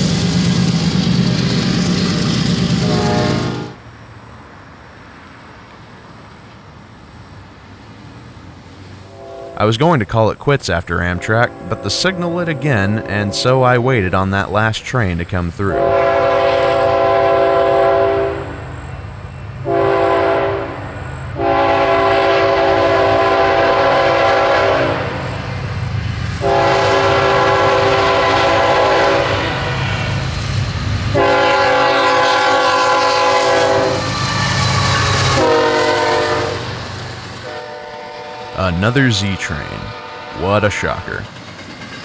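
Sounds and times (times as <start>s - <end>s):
diesel engine rumble: 0.0s - 4.0s
locomotive air horn blasts: 2.7s - 3.8s, 9.0s - 9.8s, 11.1s - 13.6s, 15.7s - 18.6s, 19.6s - 25.3s, 26.4s - 29.7s, 31.1s - 36.7s, 37.4s - 40.7s.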